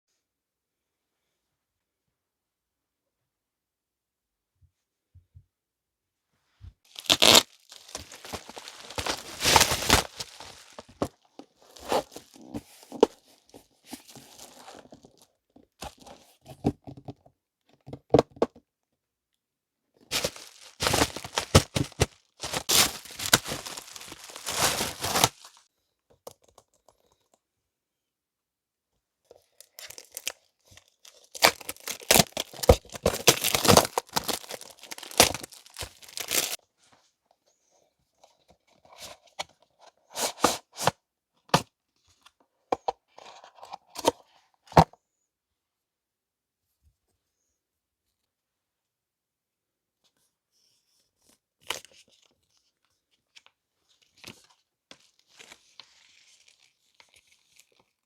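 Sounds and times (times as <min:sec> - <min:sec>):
paper and plastic crinkling: 0:06.9 - 0:15.2, 0:20.1 - 0:25.6, 0:29.6 - 0:36.6.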